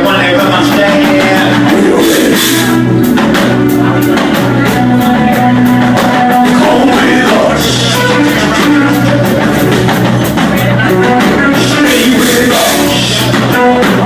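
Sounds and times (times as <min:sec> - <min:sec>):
drum kit: 0:00.0 - 0:14.0
electric guitar: 0:00.0 - 0:14.0
person singing long notes: 0:04.8 - 0:09.5, 0:10.9 - 0:14.0.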